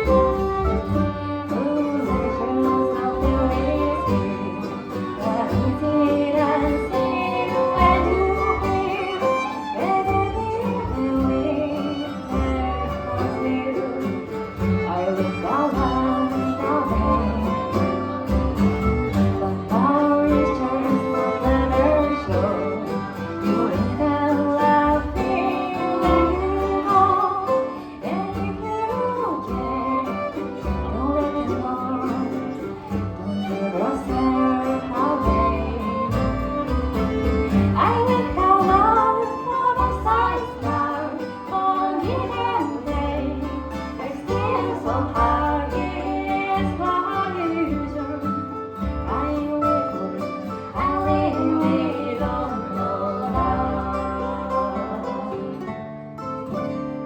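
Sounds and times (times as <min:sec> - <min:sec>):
low bass line: 0:00.0 - 0:41.3
acoustic guitar accompaniment: 0:00.0 - 0:57.0
fiddle melody: 0:00.0 - 0:57.0.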